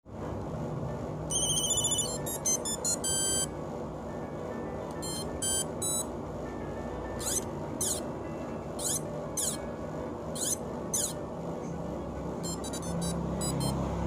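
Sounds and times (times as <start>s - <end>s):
monophonic phone ringtone beeps: 1.3s - 3.5s, 5.0s - 6.1s, 7.2s - 9.6s, 10.4s - 11.2s, 12.4s - 13.8s.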